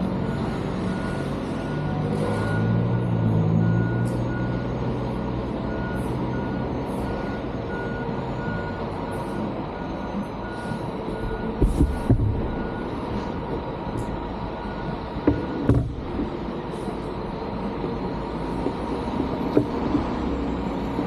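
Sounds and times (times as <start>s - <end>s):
electronic reversing beeps: 0.2s - 15.7s.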